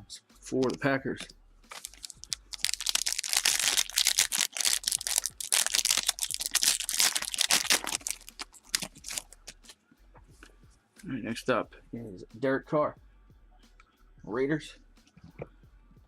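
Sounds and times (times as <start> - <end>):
plastic wrapping crinkling: 1.7 - 9.7.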